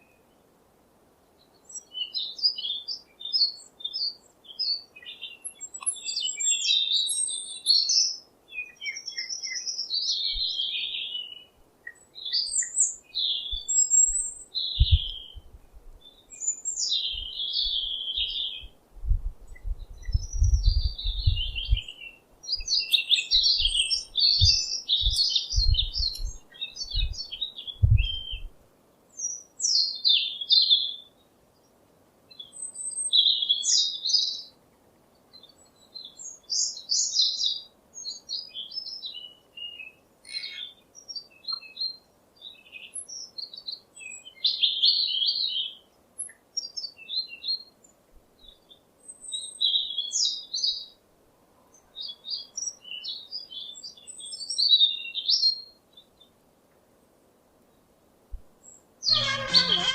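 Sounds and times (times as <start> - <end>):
songbird chirping and trilling: 1.4 - 18.8, 19.5 - 51.0, 51.6 - 56.4, 58.6 - 59.9.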